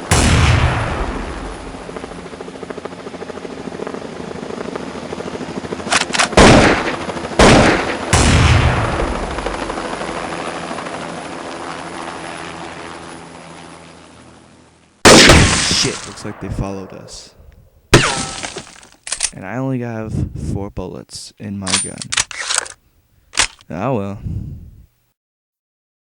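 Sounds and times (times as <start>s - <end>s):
gunshot blasts with echo: 0.0s - 1.8s, 6.4s - 9.5s, 15.1s - 18.5s
rapid chopping drone: 6.3s - 10.8s.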